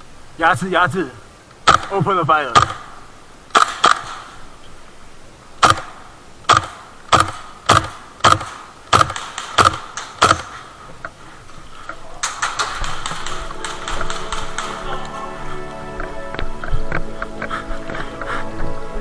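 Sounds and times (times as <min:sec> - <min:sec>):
airsoft gun shots: 0:01.6 - 0:02.0, 0:02.6 - 0:02.9, 0:03.5 - 0:04.4, 0:05.6 - 0:10.7, 0:12.2 - 0:14.7.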